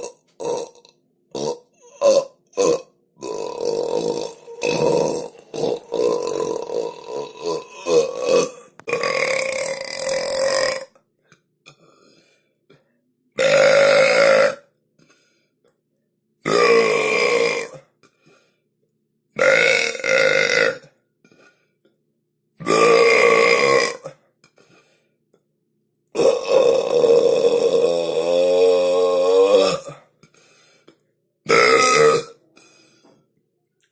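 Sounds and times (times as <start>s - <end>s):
person belching: 0.0s - 11.0s, 13.4s - 14.7s, 16.4s - 17.9s, 19.4s - 20.9s, 22.6s - 24.2s, 26.1s - 30.1s, 31.4s - 32.4s.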